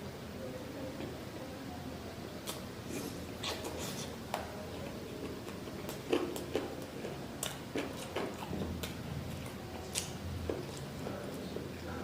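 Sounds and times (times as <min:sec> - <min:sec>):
wet chewing and mouth smacks: 0:02.4 - 0:11.7.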